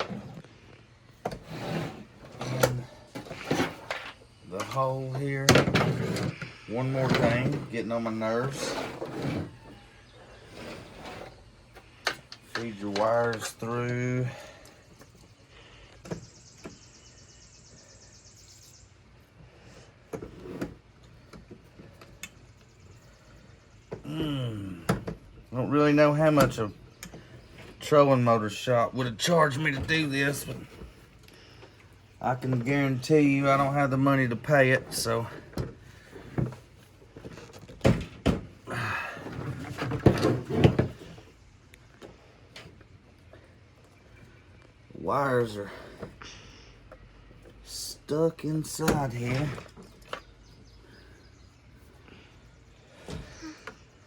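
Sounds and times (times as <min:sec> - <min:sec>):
knocks clatter and scraping of parts: 0:00.0 - 0:16.8, 0:19.6 - 0:24.2, 0:29.0 - 0:44.7, 0:48.4 - 0:51.2.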